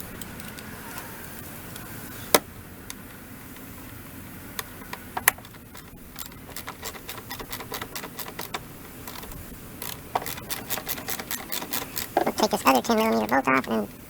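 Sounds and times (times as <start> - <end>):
hand ratchet clicking: 5.4 - 12.3.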